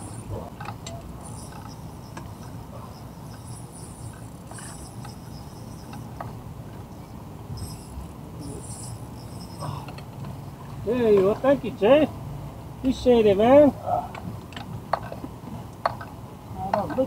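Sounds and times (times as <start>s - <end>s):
insects chirping: 0.0s - 10.8s.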